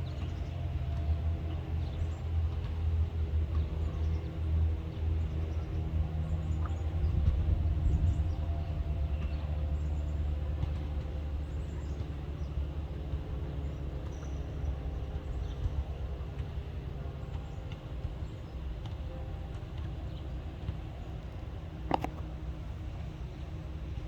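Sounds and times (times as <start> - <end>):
wind rumble on microphone: 5.5 - 9.6.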